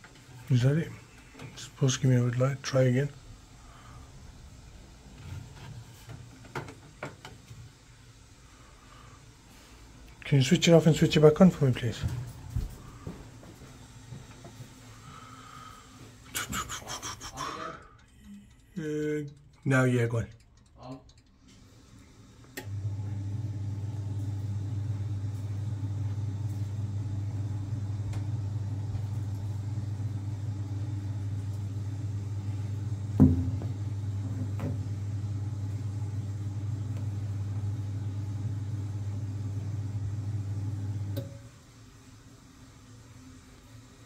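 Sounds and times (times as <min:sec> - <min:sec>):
circulating pump humming: 0:08.4 - 0:41.6
sharp knock: 0:33.2 - 0:33.6.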